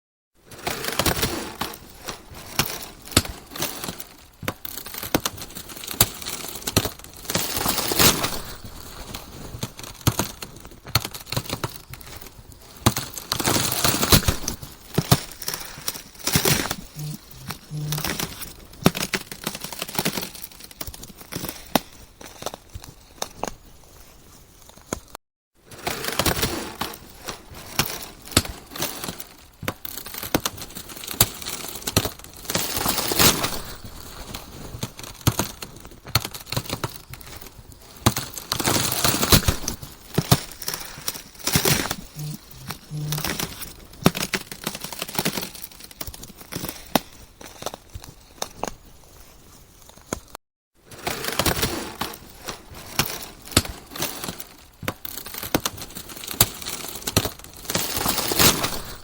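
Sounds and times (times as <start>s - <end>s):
ice cracking: 0.6s - 23.6s, 25.7s - 48.8s.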